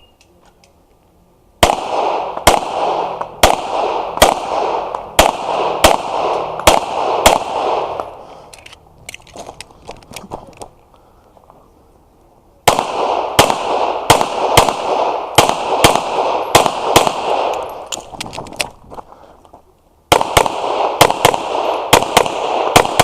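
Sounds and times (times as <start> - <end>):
pistol gunshots: 1.6 - 8.2, 12.6 - 18.1, 20.1 - 23.0.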